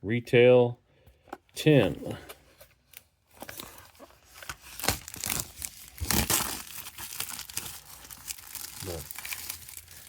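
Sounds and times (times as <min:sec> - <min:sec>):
plastic packaging crinkling and tearing: 0:02.9 - 0:10.0.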